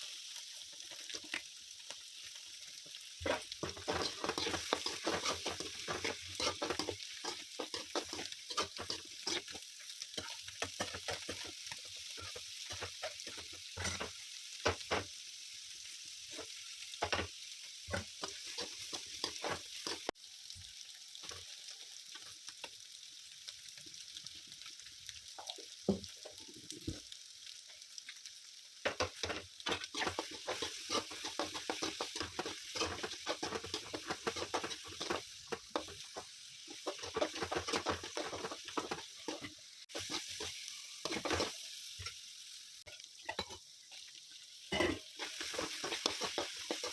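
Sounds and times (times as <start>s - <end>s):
food sizzling in a pan: 0.0s - 46.9s
spatula scraping a pan: 3.2s - 9.6s, 10.2s - 14.8s, 17.9s - 20.1s, 28.9s - 42.2s, 44.7s - 46.9s.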